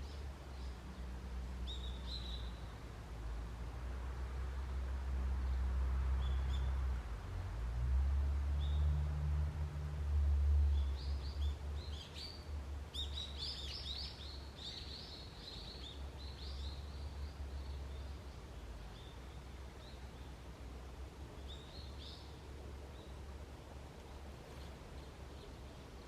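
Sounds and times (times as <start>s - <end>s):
wild birds chirping: 10.7s - 20.4s.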